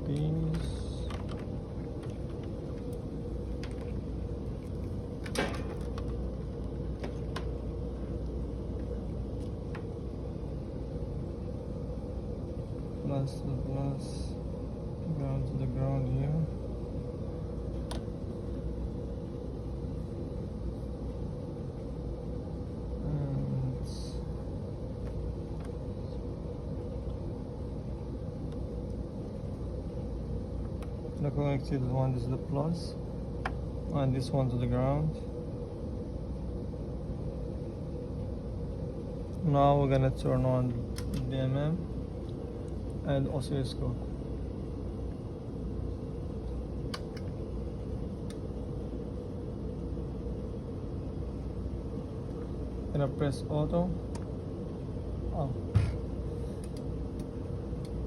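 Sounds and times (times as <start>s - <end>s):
steady low hum: 0.0s - 58.0s
light clicks of probe connectors: 40.9s - 41.3s, 56.6s - 58.0s.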